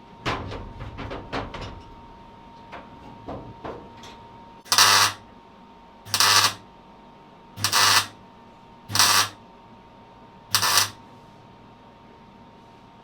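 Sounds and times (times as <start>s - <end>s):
welder arc crackling: 4.7s - 5.2s, 6.1s - 6.6s, 7.6s - 8.1s, 8.9s - 9.4s, 10.5s - 11.0s.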